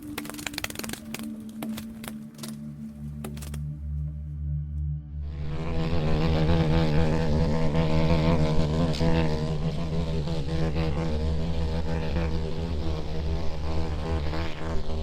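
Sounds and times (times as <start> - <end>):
flying insect buzzing: 5.2 - 15.0.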